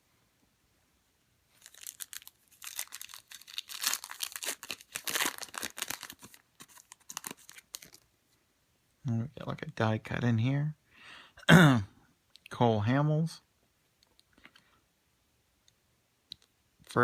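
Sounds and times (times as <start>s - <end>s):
foil wrapper tearing and crinkling: 1.6s - 8.0s.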